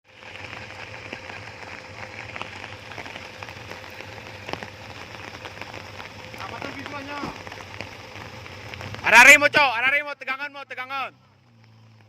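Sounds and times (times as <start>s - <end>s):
car engine idling: 0.0s - 12.0s
small sharp ticks: 11.4s - 12.0s.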